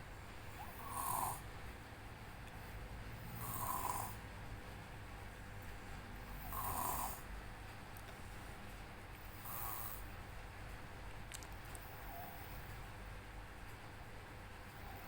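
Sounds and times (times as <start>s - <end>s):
low steady hum: 0.0s - 15.0s
boy snoring heavily: 0.6s - 1.4s, 3.4s - 4.2s, 6.4s - 7.2s.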